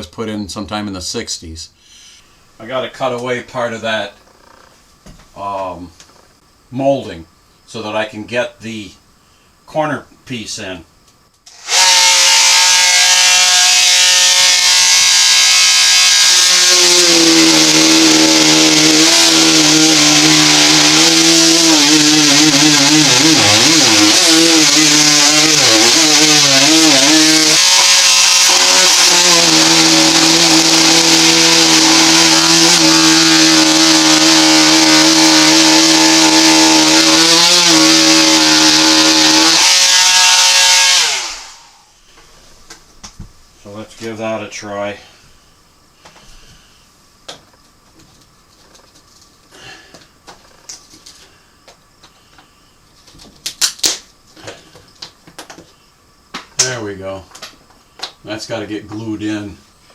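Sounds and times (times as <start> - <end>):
power tool whining: 11.5 - 41.8.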